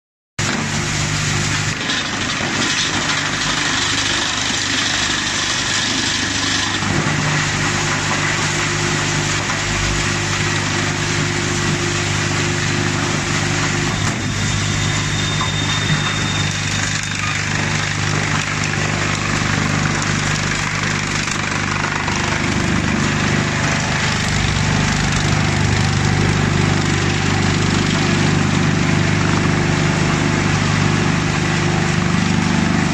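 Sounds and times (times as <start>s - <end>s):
wood chipper chipping wood: 0.4s - 32.9s.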